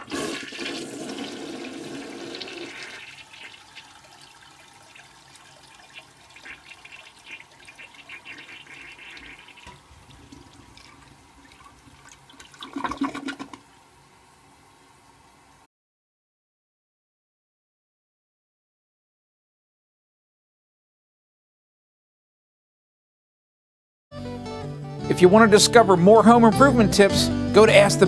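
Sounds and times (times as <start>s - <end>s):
toilet flushing: 0.0s - 13.7s
running water: 0.0s - 14.2s.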